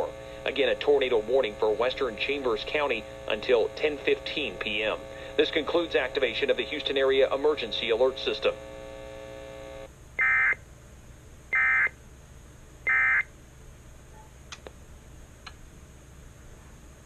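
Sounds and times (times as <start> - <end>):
steady buzzing tone: 0.0 - 10.6, 11.5 - 12.0.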